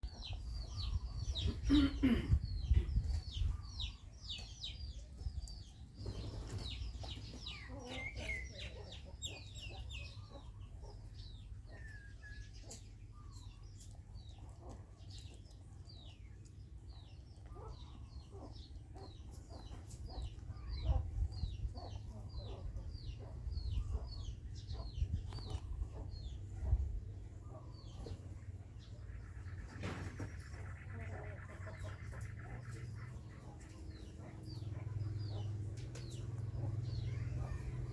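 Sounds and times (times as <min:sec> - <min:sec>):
chicks cheeping: 0:00.0 - 0:37.9.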